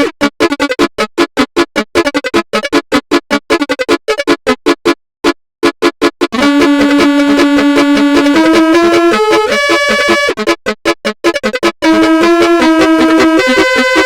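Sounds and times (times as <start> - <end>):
bus air horn melody: 6.4 - 10.4, 11.8 - 14.0
multi-tone horn chord: 6.4 - 10.4, 11.8 - 14.0.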